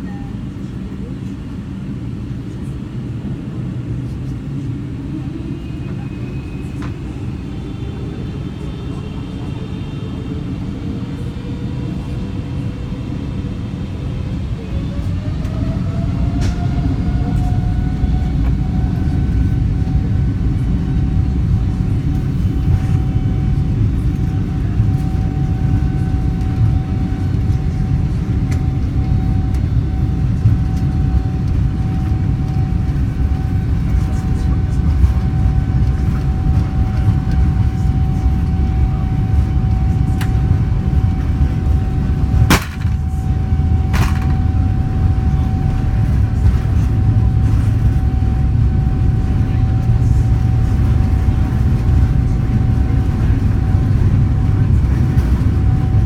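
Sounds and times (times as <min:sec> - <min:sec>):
jet engine fan tone: 0:00.0 - 0:56.0
wheels rumbling on runway: 0:02.0 - 0:56.0.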